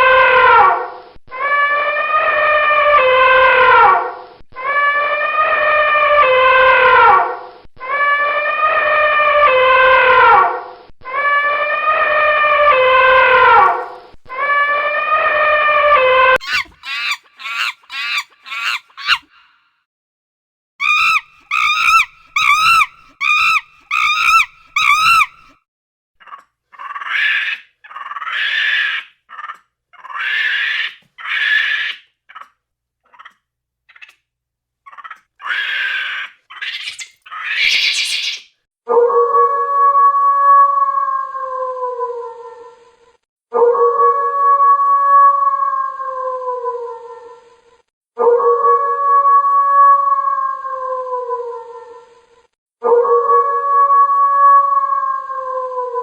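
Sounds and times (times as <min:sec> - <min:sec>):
animal calls: 0:11.1 - 0:19.7, 0:20.8 - 0:25.6, 0:26.2 - 0:34.2, 0:34.9 - 0:38.5.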